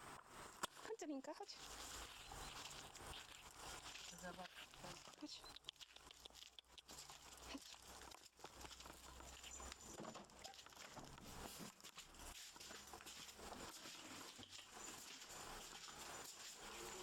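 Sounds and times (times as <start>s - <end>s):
puppy pattering about: 0.2s - 17.0s.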